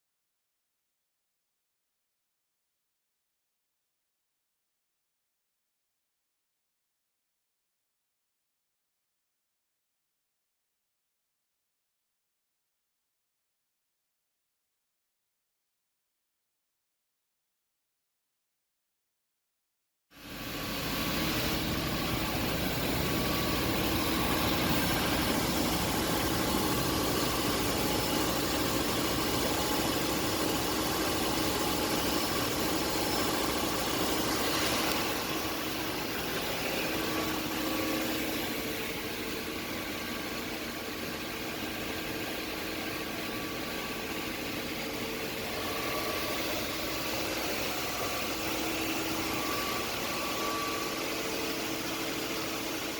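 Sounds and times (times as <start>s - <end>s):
car engine idling: 20.8s - 29.2s.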